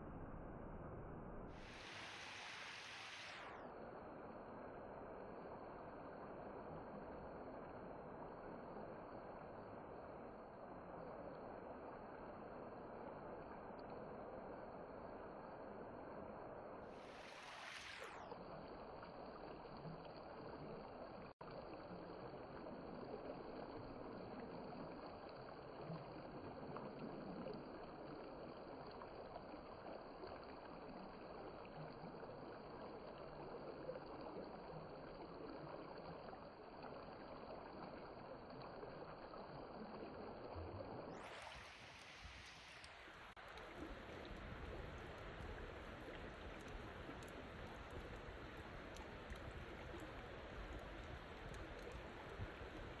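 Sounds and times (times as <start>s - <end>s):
river flowing: 1.6s - 3.9s, 16.9s - 19.8s, 37.7s - 53.0s
brief high hiss: 1.7s - 3.6s.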